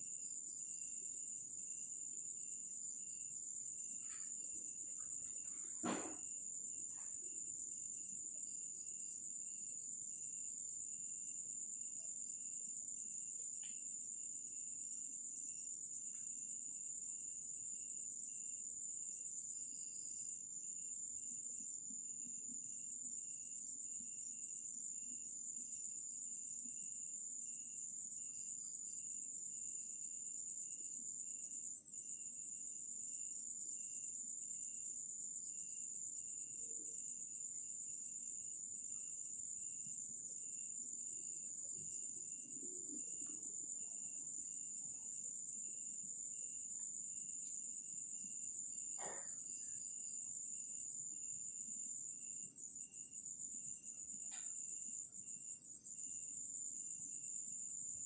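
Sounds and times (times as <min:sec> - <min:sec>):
cricket chirping: 0:00.0 - 0:58.0
faint click: 0:54.3 - 0:54.6.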